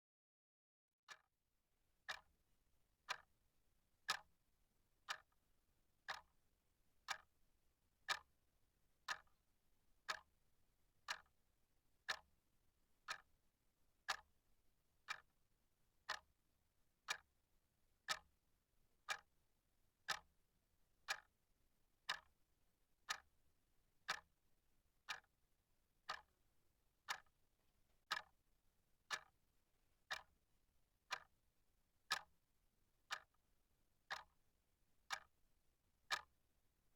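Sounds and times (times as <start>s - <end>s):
clock ticking: 2.1s - 2.3s, 3.1s - 3.3s, 4.1s - 4.3s, 5.0s - 5.3s, 6.1s - 6.3s, 7.1s - 7.3s, 8.1s - 8.3s, 9.1s - 9.3s, 10.1s - 10.3s, 11.1s - 11.3s, 12.1s - 12.3s, 13.0s - 13.3s, 14.1s - 14.3s, 15.0s - 15.3s, 16.1s - 16.3s, 17.1s - 17.3s, 18.1s - 18.3s, 19.1s - 19.3s, 20.1s - 20.3s, 21.1s - 21.3s, 22.1s - 22.3s, 23.1s - 23.3s, 24.1s - 24.3s, 25.1s - 25.3s, 26.1s - 26.3s, 27.1s - 27.3s, 28.1s - 28.4s, 29.1s - 29.4s, 30.1s - 30.3s, 31.1s - 31.3s, 32.1s - 32.3s, 33.1s - 33.4s, 34.1s - 34.4s, 35.1s - 35.3s, 36.1s - 36.3s.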